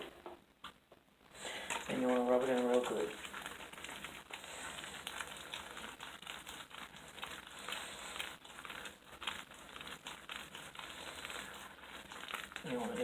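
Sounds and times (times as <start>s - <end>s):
soapy gloves rubbing and crackling: 1.2s - 13.0s.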